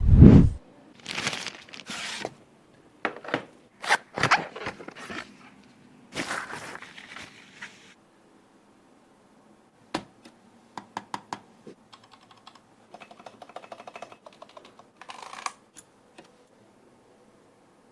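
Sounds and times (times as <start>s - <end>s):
rustling and scraping of objects: 3.1s - 8.0s.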